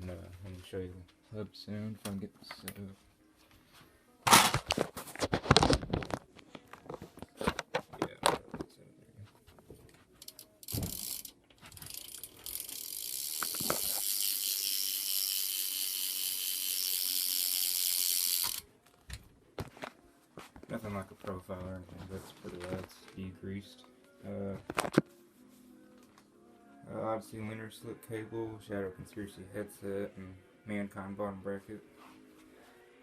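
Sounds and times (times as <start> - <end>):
bicycle hub ratcheting buzz: 10.2 - 18.6.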